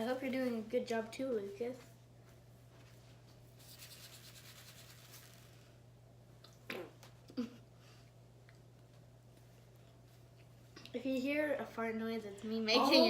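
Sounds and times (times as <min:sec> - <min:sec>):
faint scraping and rubbing: 0:02.9 - 0:05.8.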